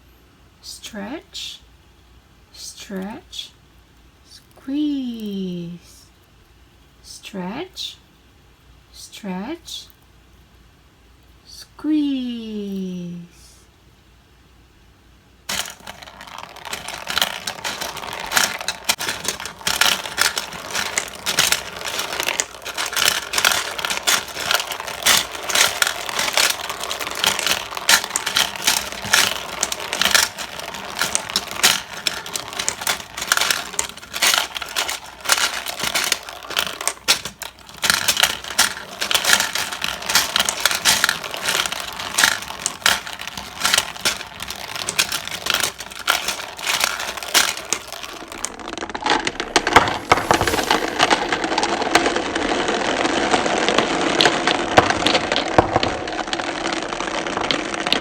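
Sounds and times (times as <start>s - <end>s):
small plastic objects clattering: 15.5s - 58.0s.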